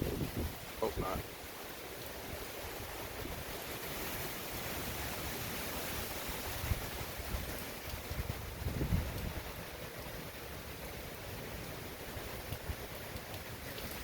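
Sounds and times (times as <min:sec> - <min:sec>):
strong wind blowing: 0:00.0 - 0:01.3, 0:06.3 - 0:09.9
wind gusts thumping microphone: 0:00.0 - 0:01.4, 0:02.2 - 0:14.0.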